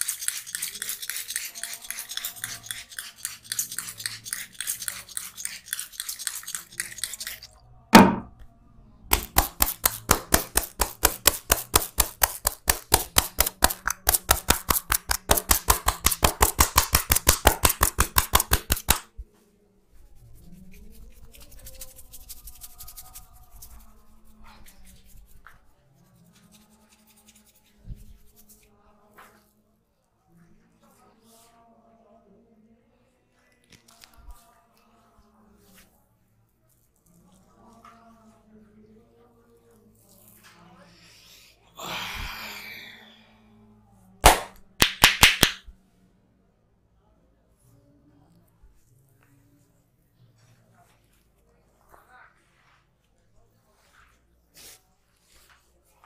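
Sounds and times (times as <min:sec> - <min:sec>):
hands rubbing and tapping head: 0:09.1 - 0:19.1, 0:44.2 - 0:45.6
rhythmic hand slaps: 0:09.1 - 0:19.1, 0:44.2 - 0:45.7
faint handling sounds: 0:33.3 - 0:41.0, 0:47.6 - 0:56.0.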